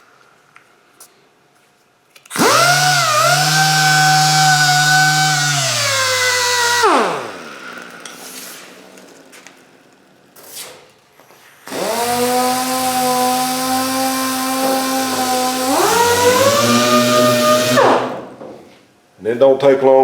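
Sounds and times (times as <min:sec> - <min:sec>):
air sander whine: 0:02.3 - 0:10.0, 0:11.6 - 0:18.3.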